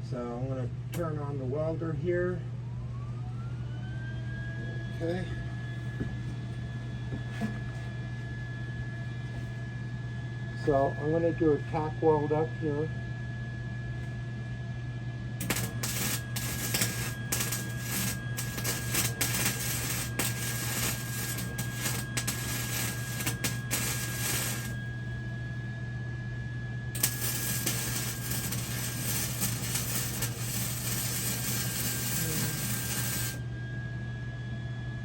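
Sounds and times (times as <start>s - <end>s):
steady low hum: 5.6s - 34.0s
arc welder crackling: 15.4s - 25.4s, 27.0s - 33.4s.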